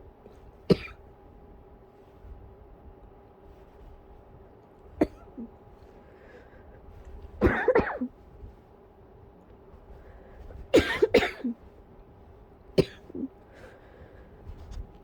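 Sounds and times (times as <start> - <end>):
person coughing into pillow: 0.6 - 1.1, 4.9 - 5.6, 7.4 - 8.2, 10.6 - 11.8, 12.7 - 13.4.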